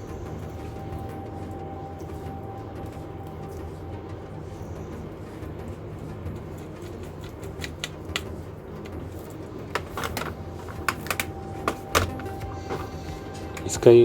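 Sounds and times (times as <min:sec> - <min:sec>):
steady low hum: 0:00.0 - 0:14.0
clicks of small parts handled: 0:09.7 - 0:12.4.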